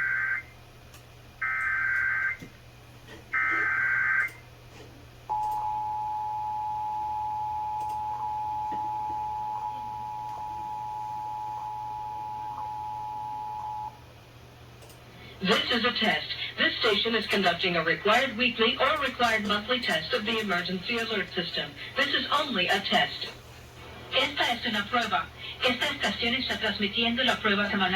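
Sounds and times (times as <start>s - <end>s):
two-tone attention signal: 5.3s - 14.0s
low hum: 5.3s - 15.6s.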